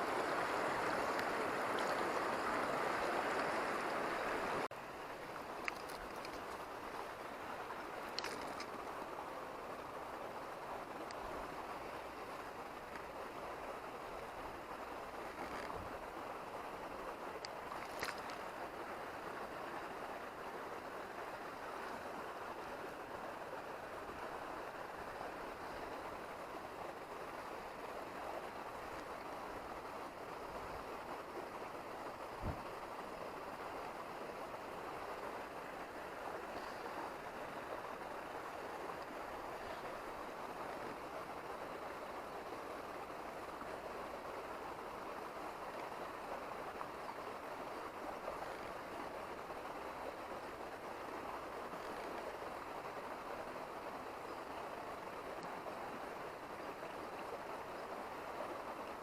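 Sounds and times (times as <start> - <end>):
river water rushing: 0.0 - 59.0.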